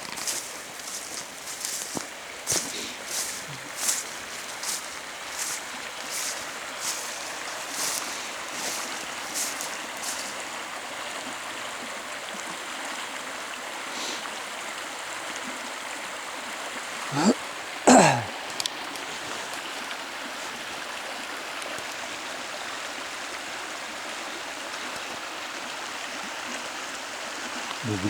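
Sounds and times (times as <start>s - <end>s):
footsteps on ground: 0.0s - 10.4s.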